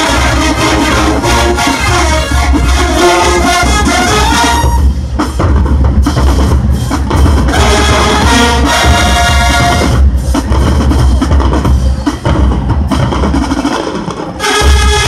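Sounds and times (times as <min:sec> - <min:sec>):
brass section playing: 0:00.0 - 0:05.2, 0:07.2 - 0:10.2, 0:14.4 - 0:15.0
drumline playing: 0:00.0 - 0:15.0.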